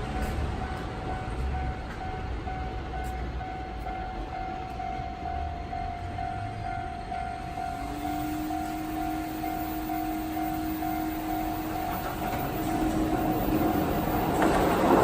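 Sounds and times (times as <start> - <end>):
train rumbling past: 0.0 - 15.0
wheels clicking over rail joints: 9.6 - 15.0.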